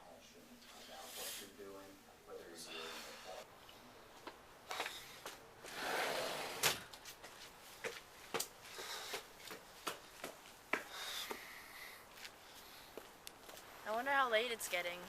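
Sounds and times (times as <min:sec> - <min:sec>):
footsteps outdoors: 0:03.5 - 0:05.8, 0:06.8 - 0:15.0.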